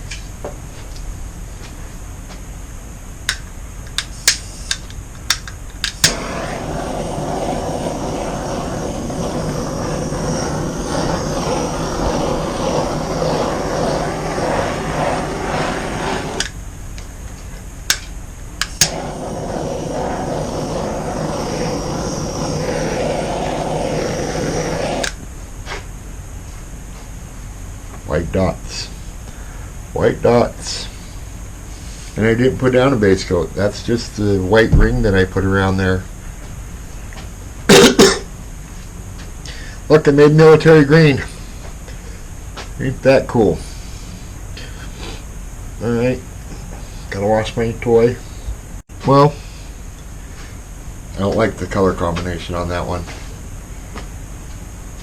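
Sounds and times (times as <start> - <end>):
heat gun blowing air: 5.8 - 16.6, 18.6 - 25.2.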